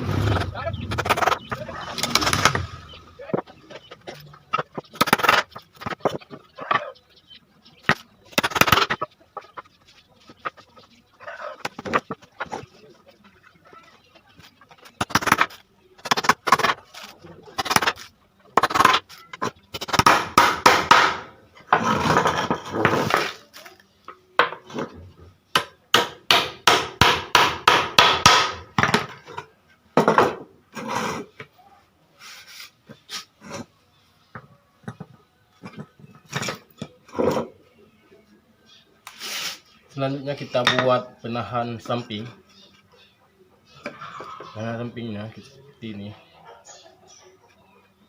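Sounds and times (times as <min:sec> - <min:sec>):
rough continuous noise: 0:00.0 - 0:48.0
hammer driving nails into wood: 0:19.8 - 0:22.0, 0:25.6 - 0:29.1.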